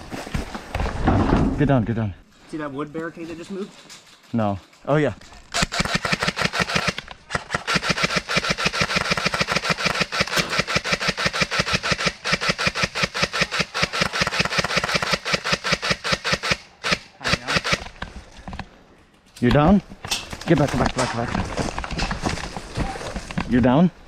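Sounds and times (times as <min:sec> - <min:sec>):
airsoft gun rapid fire: 0:05.6 - 0:17.9.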